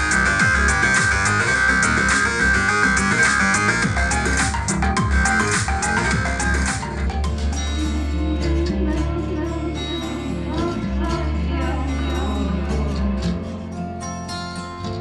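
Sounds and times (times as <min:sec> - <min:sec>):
bass line and percussion: 0:00.0 - 0:09.5
person singing: 0:00.0 - 0:13.8.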